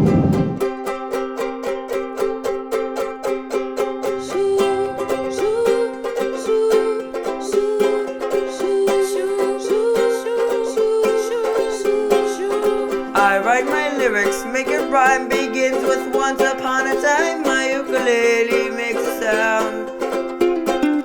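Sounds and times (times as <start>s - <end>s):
ukulele melody line: 0.0s - 21.0s
ukuleles strumming: 0.0s - 21.0s.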